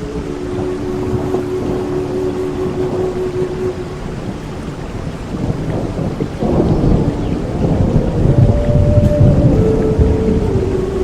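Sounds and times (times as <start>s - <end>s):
held tones changing pitch: 0.0s - 4.5s, 8.1s - 11.0s
rain and thunder rumble: 0.0s - 11.0s.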